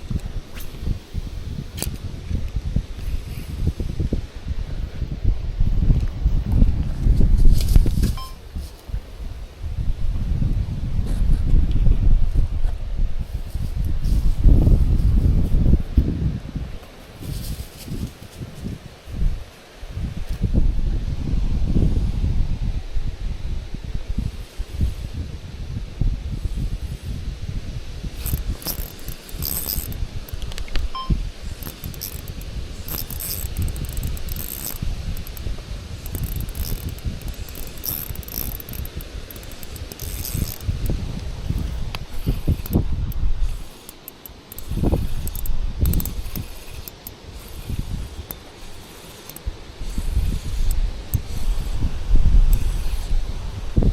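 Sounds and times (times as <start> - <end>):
wind buffeting microphone: 0.0 - 53.9
light rustle: 16.8 - 20.5
sharp clicks: 28.2 - 51.7
high rustling or rattling: 28.2 - 53.2.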